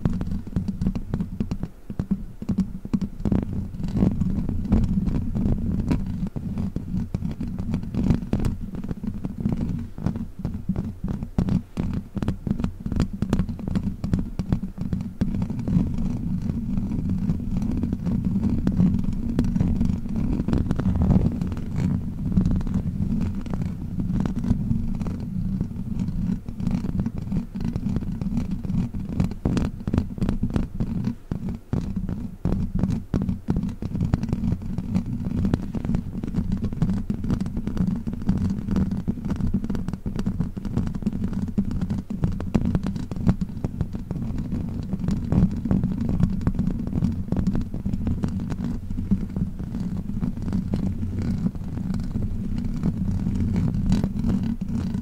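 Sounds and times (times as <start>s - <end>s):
scratching on microphone: 0.0s - 55.0s
low rumble: 20.6s - 23.2s.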